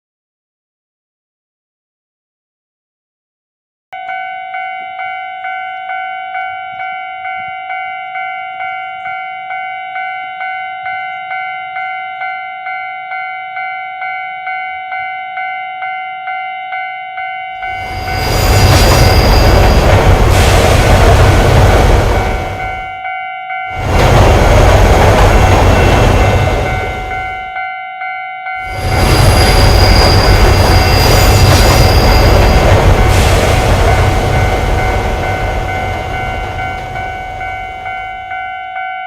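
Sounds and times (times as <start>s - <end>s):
train rushing past: 17.6s - 23.0s, 23.7s - 27.6s, 28.6s - 38.6s
electronic crossing bell dinging: 34.0s - 39.0s.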